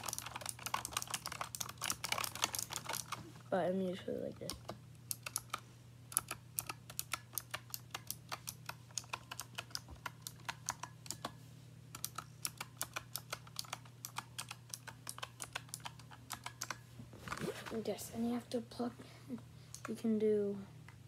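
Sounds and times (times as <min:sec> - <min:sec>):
keyboard typing: 0:00.0 - 0:03.2, 0:04.4 - 0:11.4, 0:12.0 - 0:16.8.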